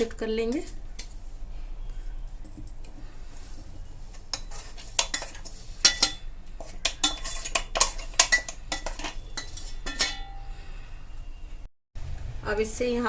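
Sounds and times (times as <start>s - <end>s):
spoon scraping a grinder jar: 2.0s - 10.4s.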